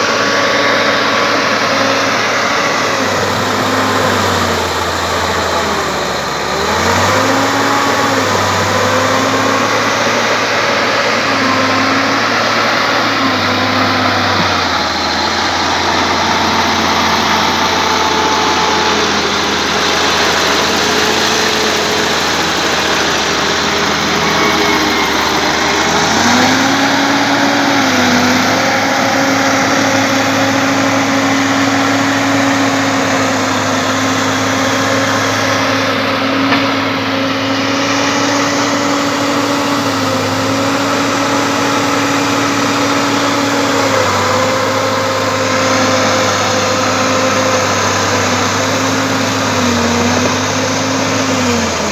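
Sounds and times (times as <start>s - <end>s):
bulldozer diesel engine under load: 0.0s - 51.9s.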